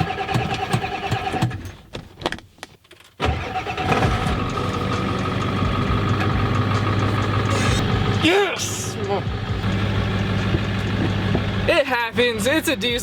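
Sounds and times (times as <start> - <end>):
diesel engine cranking: 0.0 - 1.9, 3.2 - 13.0
diesel engine idling: 3.3 - 13.0.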